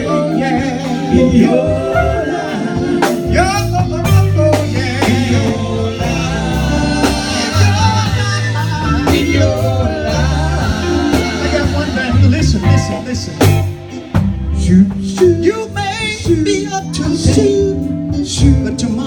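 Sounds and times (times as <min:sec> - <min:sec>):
person singing gospel: 0:00.0 - 0:19.0
walking bass line: 0:00.0 - 0:19.0
drum and cymbal hits: 0:02.8 - 0:16.5.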